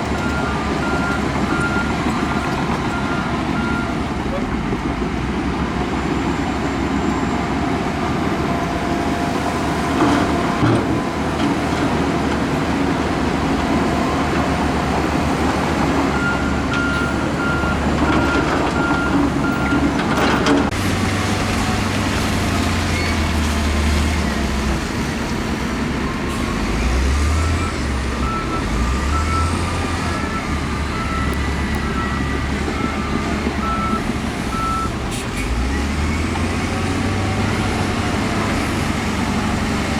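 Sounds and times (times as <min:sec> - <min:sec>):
heavy diesel machinery running: 0:00.0 - 0:39.9
reversing alarm beeping: 0:16.1 - 0:19.9, 0:27.2 - 0:35.0.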